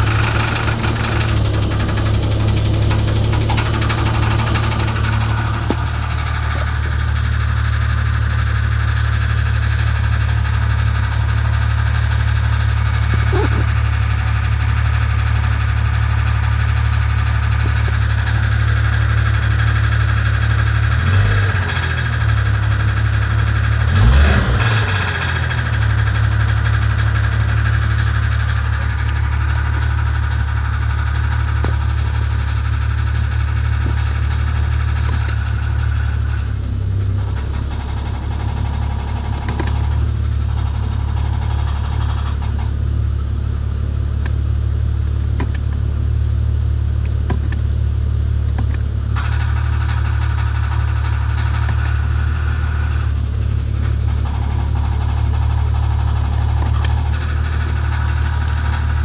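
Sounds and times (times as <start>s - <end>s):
knocking engine idling and revving: 0.0s - 59.0s.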